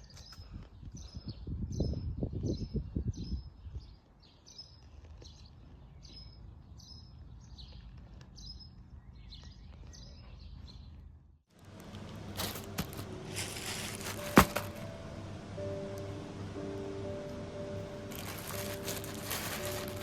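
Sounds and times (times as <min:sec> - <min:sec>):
bird chirping: 0:00.0 - 0:11.1.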